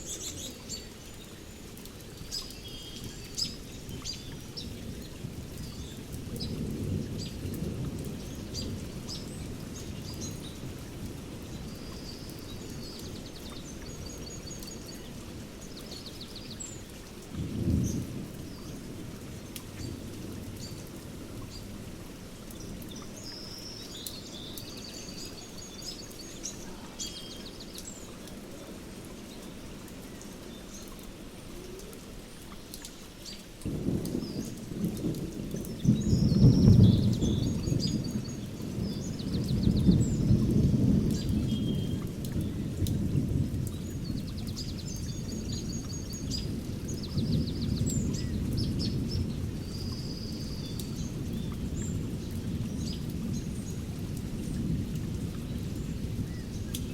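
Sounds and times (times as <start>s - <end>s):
small birds chirping: 0.0s - 10.8s, 22.4s - 42.9s, 43.6s - 53.8s
steady rain: 0.0s - 56.9s
thunder rumbling: 33.7s - 45.5s.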